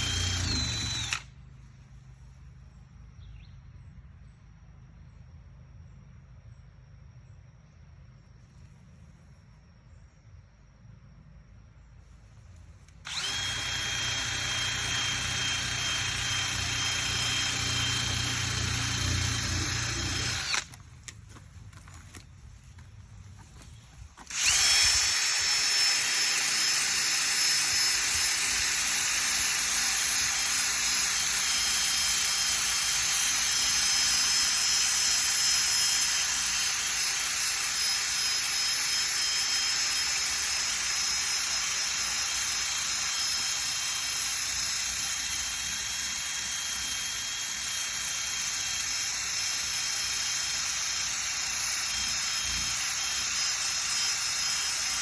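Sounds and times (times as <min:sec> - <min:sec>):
drill sanding paint: 0:00.0 - 0:01.2, 0:13.1 - 0:20.7, 0:24.2 - 0:55.0.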